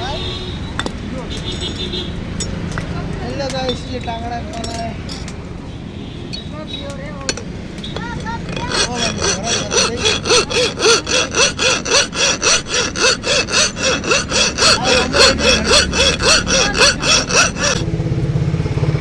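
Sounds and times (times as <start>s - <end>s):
hand tool rasping strokes: 8.0s - 17.9s.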